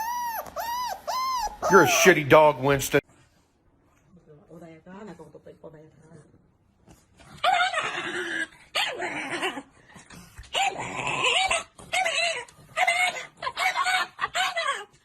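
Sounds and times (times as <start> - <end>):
dog whining yelps: 0.0 - 2.1, 10.6 - 15.0.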